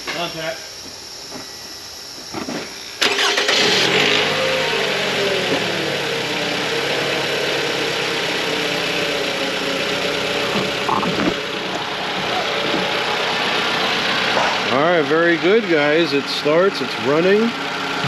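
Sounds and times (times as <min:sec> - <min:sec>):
starter cranking engine: 0:03.0 - 0:04.4
car engine idling: 0:03.1 - 0:18.0.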